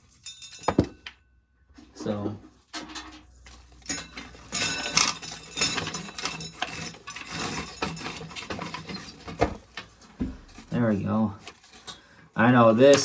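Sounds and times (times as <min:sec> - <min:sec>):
dry corn rattling: 0:03.3 - 0:13.0.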